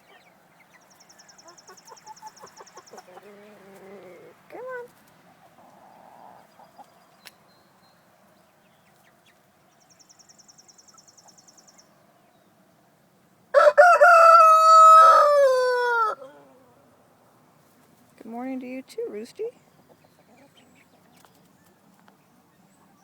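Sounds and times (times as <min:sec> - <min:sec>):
faint chicken sounds: 0:00.0 - 0:18.3, 0:19.1 - 0:23.0
rooster crowing: 0:13.5 - 0:16.4.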